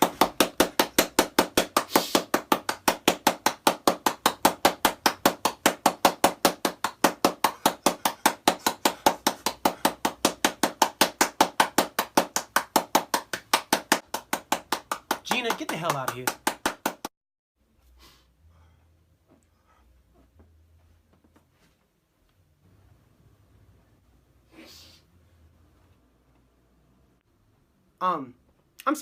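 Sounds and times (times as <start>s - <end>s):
rapid steady knocks: 0.0s - 17.1s.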